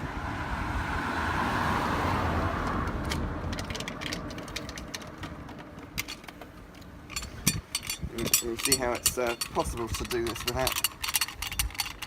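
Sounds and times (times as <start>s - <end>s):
tyre noise of passing car: 0.0s - 7.7s.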